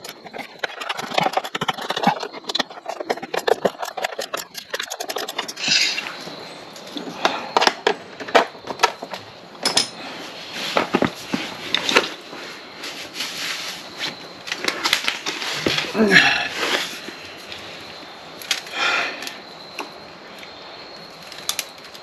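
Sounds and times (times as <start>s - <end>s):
tools knocking and scraping: 6.8s - 10.0s.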